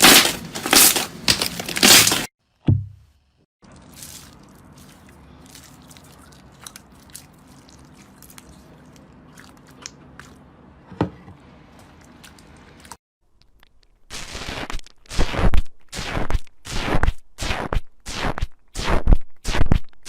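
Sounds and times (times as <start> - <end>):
low background hum: 2.8 - 13.0.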